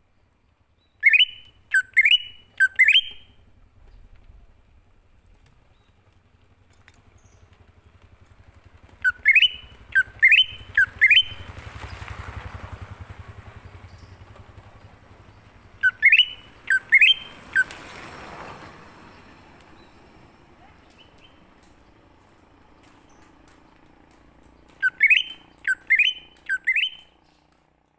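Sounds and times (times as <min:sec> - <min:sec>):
low engine hum: 0:00.0 - 0:27.9
bird calling with sharp rising notes: 0:00.8 - 0:04.1, 0:08.9 - 0:27.6.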